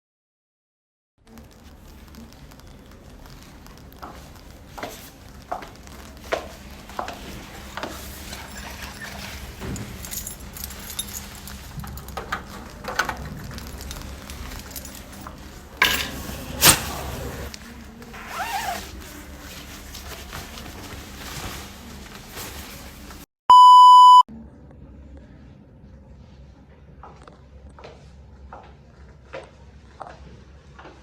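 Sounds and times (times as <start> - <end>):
rushing scraping noise: 16.0 - 17.6
electronic beep: 23.5 - 24.3.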